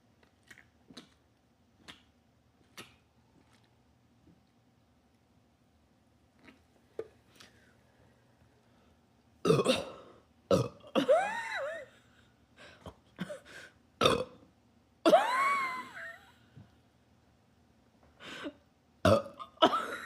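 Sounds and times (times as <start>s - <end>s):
person burping loudly: 9.4s - 11.2s, 14.0s - 14.4s, 19.0s - 19.8s
person laughing: 11.0s - 12.0s, 15.1s - 16.4s, 19.6s - 20.0s.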